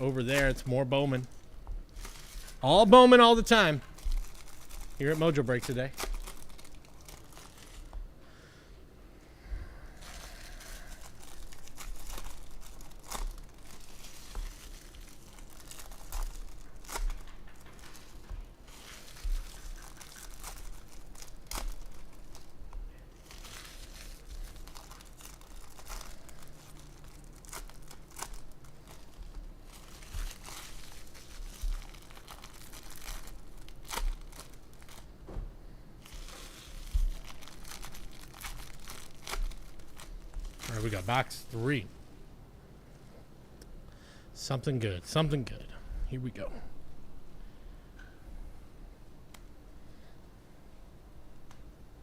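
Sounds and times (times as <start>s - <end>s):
plastic wrappers crinkling and tearing: 0.0s - 8.0s, 10.0s - 35.2s, 36.0s - 41.6s.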